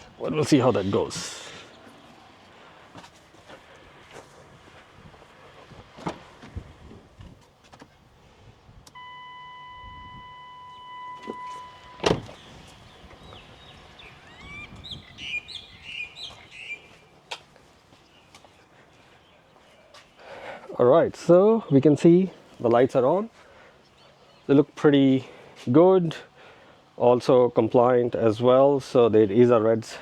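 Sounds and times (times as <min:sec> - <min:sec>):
birds chirping: 0:00.0 - 0:04.0, 0:09.0 - 0:25.4
car door and controls clicking: 0:08.9 - 0:12.5
electronic warning tone: 0:09.0 - 0:12.2
loud thump: 0:12.0 - 0:12.4.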